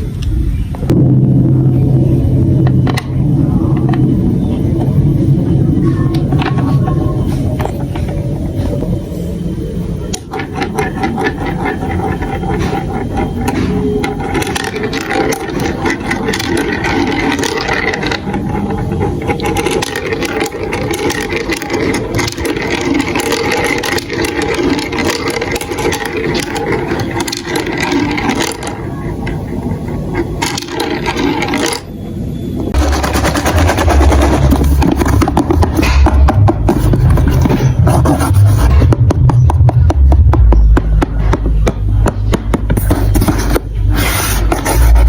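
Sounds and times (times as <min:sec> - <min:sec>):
marbles rattling down plastic run: 0:10.2 - 0:31.9, 0:32.8 - 0:37.6.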